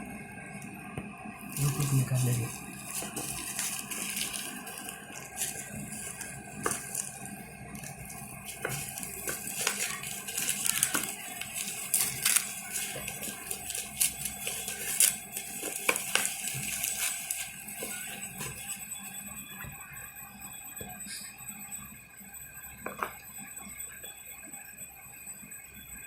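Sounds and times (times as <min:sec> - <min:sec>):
plastic packaging clicks and rattles: 0:01.6 - 0:18.8.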